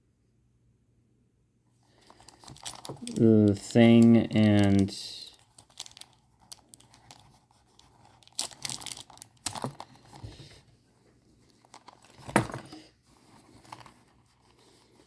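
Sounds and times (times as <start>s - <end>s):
plastic packaging crinkling: 1.9s - 10.2s.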